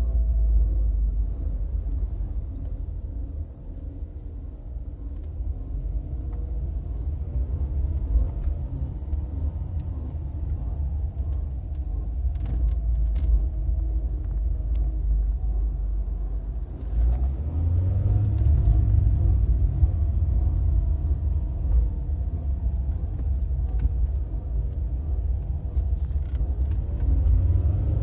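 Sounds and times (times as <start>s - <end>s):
car engine rumbling: 0.0s - 28.0s.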